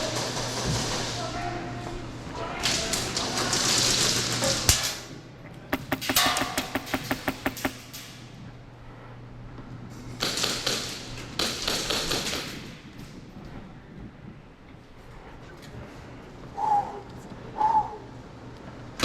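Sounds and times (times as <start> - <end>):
airsoft gun rapid shots: 5.8 - 7.8, 10.2 - 12.7.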